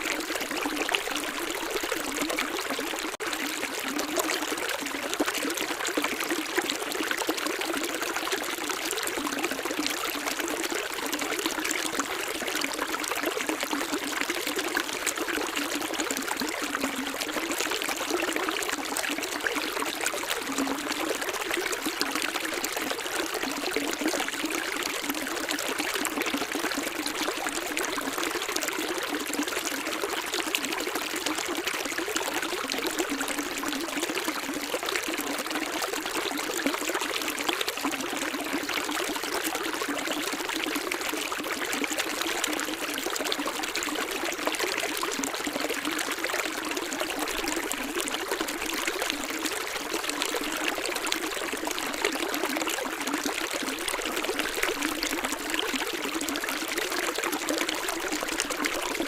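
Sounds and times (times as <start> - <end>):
stream trickling and splashing: 0.0 - 59.0.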